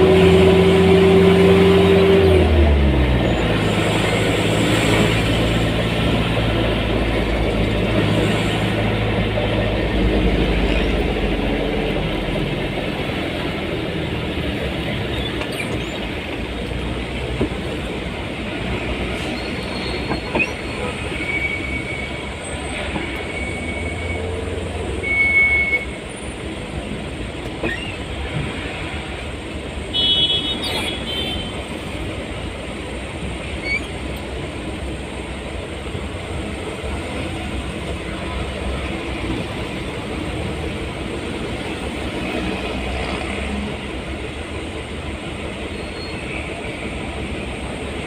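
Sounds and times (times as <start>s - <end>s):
vehicle engine: 0.0s - 25.2s, 25.8s - 48.0s
road noise: 0.0s - 48.0s
short high-pitched squeals: 19.2s - 22.6s, 27.6s - 28.1s, 33.5s - 34.0s.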